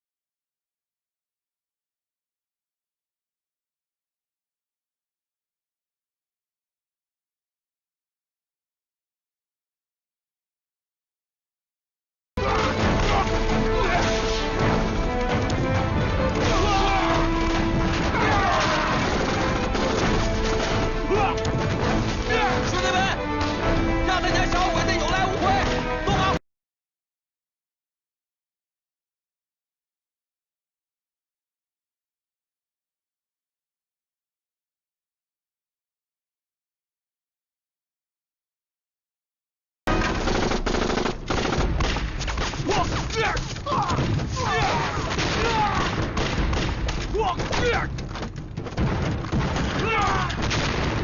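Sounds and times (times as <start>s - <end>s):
battle crashes and impacts: 12.4s - 23.8s, 39.9s - 51.0s
dramatic film score: 12.4s - 26.4s, 39.9s - 51.0s
machine-gun fire: 16.4s - 20.9s, 39.9s - 43.0s, 44.8s - 47.1s, 48.7s - 51.0s.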